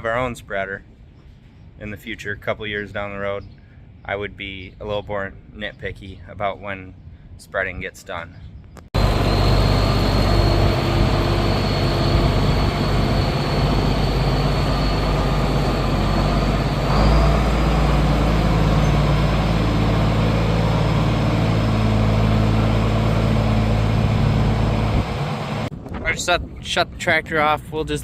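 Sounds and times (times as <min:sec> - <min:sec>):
faint high whine: 0:09.0 - 0:20.8
diesel tractor engine running: 0:09.0 - 0:25.7.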